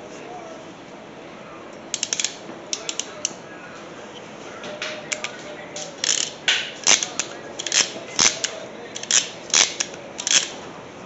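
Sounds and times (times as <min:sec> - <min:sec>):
wire crimper snapping and clicking: 0:01.9 - 0:03.4, 0:04.6 - 0:10.6.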